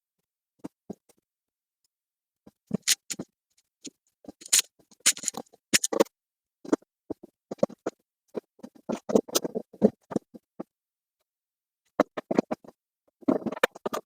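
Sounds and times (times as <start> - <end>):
screwdriver clicking on plastic: 2.9 - 3.2, 4.4 - 6.0.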